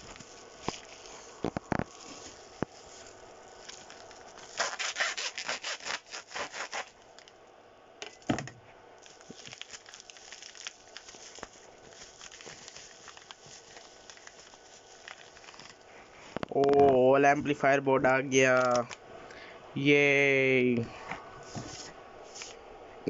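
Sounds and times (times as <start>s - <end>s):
packaging being torn: 3.6s - 7.4s, 9.0s - 15.8s, 18.6s - 19.0s.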